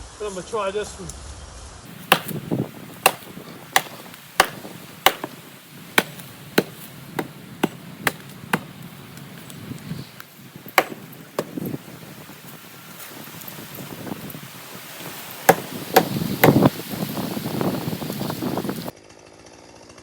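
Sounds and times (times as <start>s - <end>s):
hammer striking wood: 1.9s - 12.0s, 15.0s - 16.7s.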